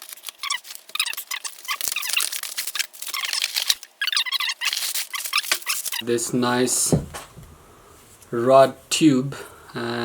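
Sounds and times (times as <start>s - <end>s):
packaging crinkling and rustling: 0.0s - 6.0s.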